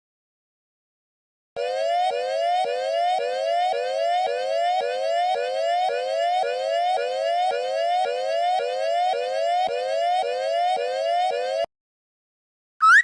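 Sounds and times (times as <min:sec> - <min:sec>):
electronic warning tone rising: 0:01.6 - 0:11.7.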